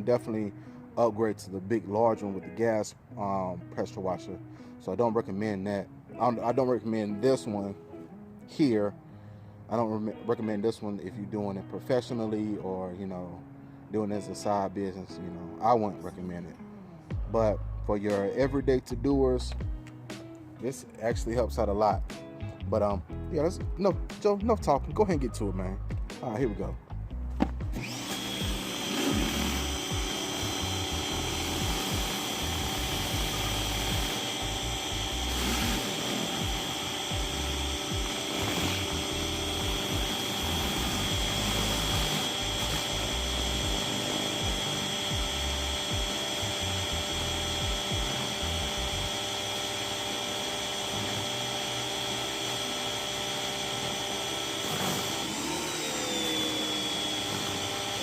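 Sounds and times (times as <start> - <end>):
pressure washer whining: 27.4 - 58.0.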